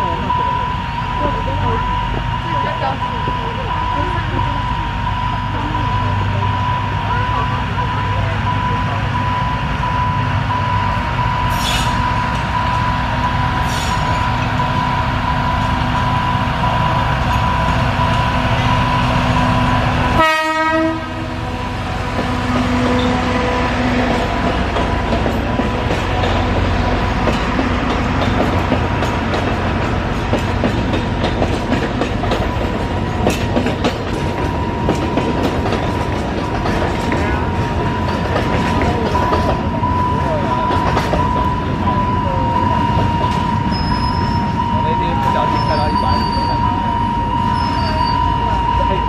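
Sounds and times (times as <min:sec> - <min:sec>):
steady high tone: 0:00.0 - 0:30.1, 0:32.5 - 0:49.0
diesel locomotive running: 0:00.0 - 0:49.0
train horn blast: 0:20.1 - 0:24.4.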